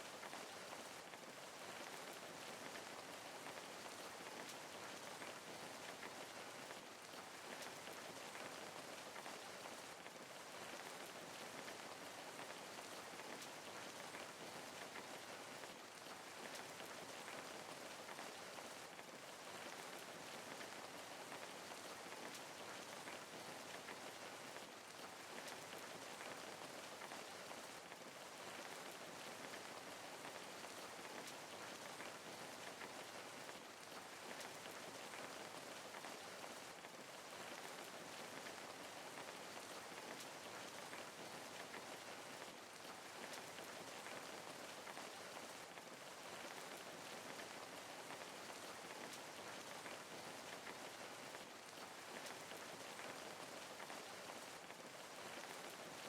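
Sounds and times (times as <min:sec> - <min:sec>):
rain patter: 0:00.0 - 0:56.0.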